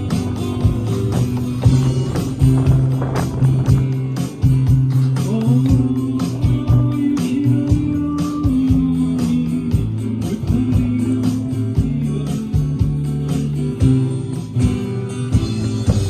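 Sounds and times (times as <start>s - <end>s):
instrumental folk band playing: 0.0s - 16.0s.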